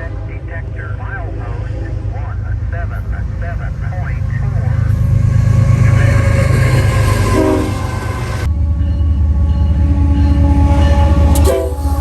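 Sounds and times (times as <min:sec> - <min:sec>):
rumble of passing train: 0:00.0 - 0:12.0
train horn blowing: 0:04.8 - 0:12.0.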